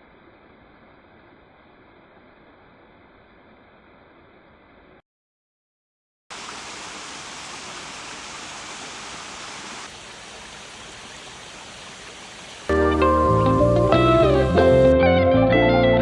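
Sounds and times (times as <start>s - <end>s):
waterfall rushing: 6.3s - 14.9s.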